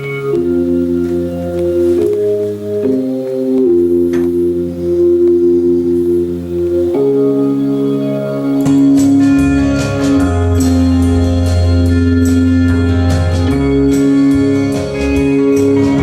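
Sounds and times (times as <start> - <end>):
bass line: 0.0 - 16.0
organ-like keyboard chords: 0.0 - 16.0.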